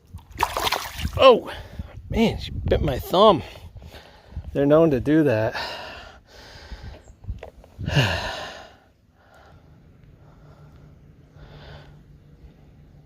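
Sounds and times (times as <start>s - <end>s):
man sighing loudly: 7.8s - 8.8s.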